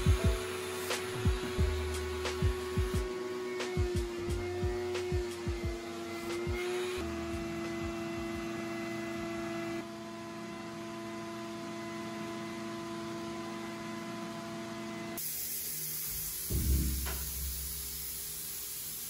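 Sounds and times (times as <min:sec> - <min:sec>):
high hiss: 0:15.2 - 0:19.0.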